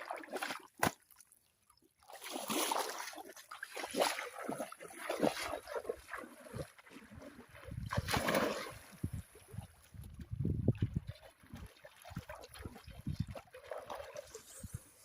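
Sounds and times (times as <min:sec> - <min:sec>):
hands splashing in water: 0:00.0 - 0:01.3, 0:02.1 - 0:06.7, 0:07.8 - 0:09.0.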